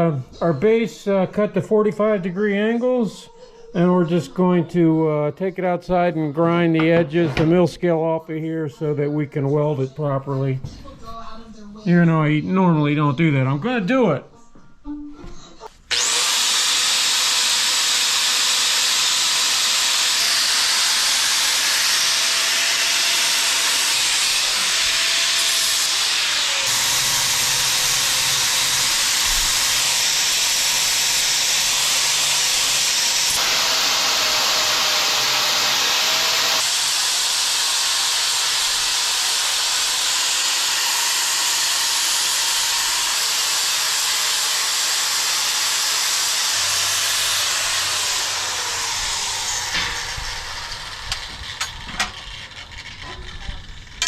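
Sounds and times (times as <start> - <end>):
angle grinder grinding steel: 15.9 - 54.0.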